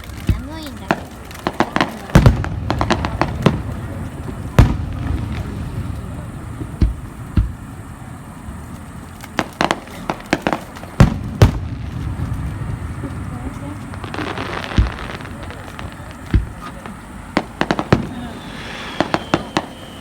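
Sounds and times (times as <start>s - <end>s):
fireworks bursting with sharp bangs: 0.0s - 20.0s
low rumble: 11.6s - 14.1s.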